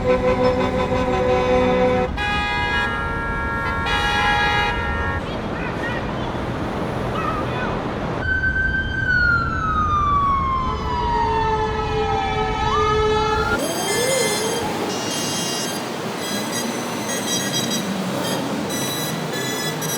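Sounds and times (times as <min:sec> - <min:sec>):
steady horn tone: 0:00.0 - 0:05.2
traffic rumble: 0:00.0 - 0:19.9
emergency siren wailing: 0:08.2 - 0:15.8.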